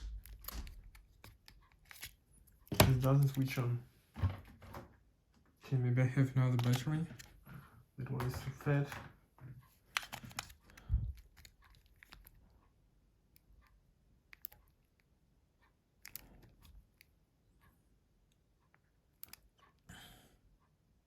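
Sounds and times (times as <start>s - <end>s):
plastic phone clicks and taps: 0.0s - 3.5s, 6.5s - 7.4s, 9.9s - 12.3s.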